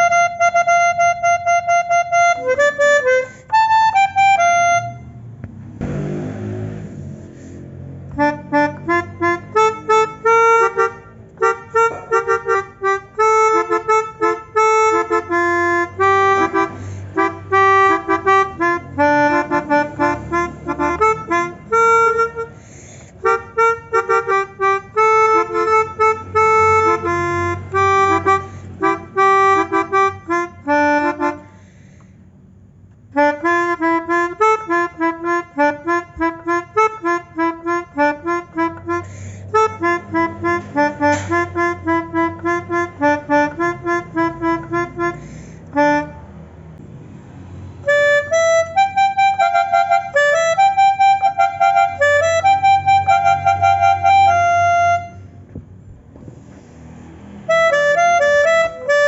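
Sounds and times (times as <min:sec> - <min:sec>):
melodica playing quick short notes: 0:33.2 - 0:45.2.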